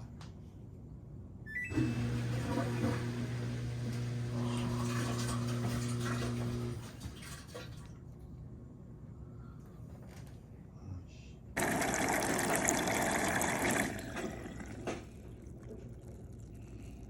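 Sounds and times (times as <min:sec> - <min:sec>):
electric hum: 0:01.7 - 0:06.9
water rushing into washing machine: 0:01.7 - 0:08.0, 0:11.6 - 0:15.9.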